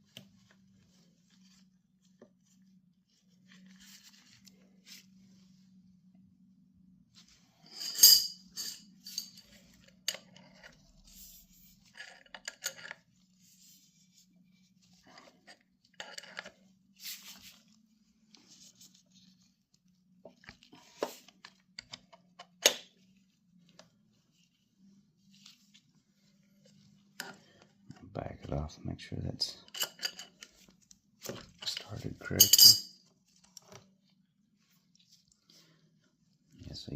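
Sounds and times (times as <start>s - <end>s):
metal tool clinks and scrapes: 7.6s - 10.8s, 29.7s - 30.5s, 31.6s - 33.0s.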